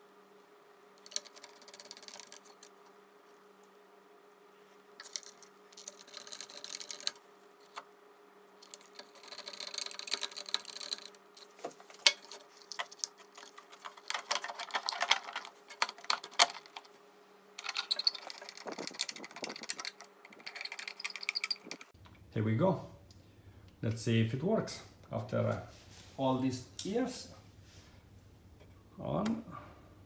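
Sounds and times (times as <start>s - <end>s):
faint steady hum: 0.0s - 30.0s
hardware clicking: 8.6s - 16.9s, 17.6s - 22.0s
light metallic rattles: 17.6s - 22.0s.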